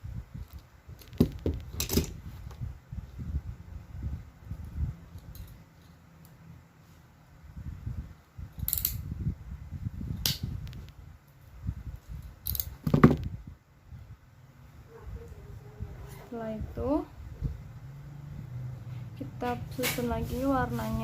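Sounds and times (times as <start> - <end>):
cable snips: 8.6 - 9.1, 12.4 - 12.9.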